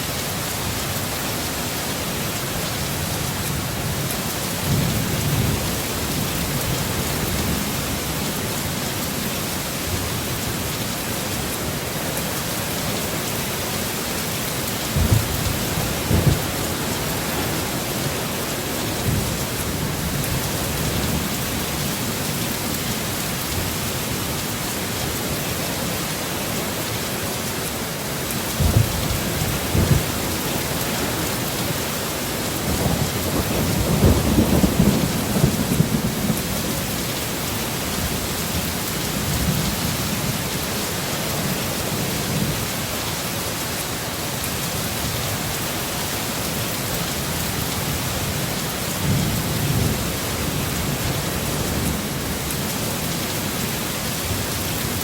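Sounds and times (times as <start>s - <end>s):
heavy rain falling: 0.0s - 55.0s
thunder rumbling: 14.8s - 21.9s, 28.4s - 37.0s.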